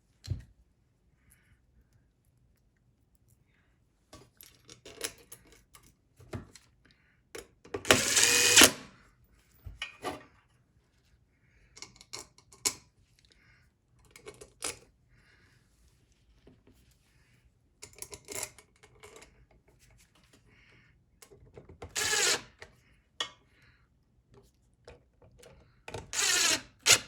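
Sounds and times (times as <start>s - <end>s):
impact driver driving screws: 7.9s - 8.9s, 21.9s - 22.5s, 26.0s - 27.0s
screws and metal parts rattling: 21.9s - 22.4s.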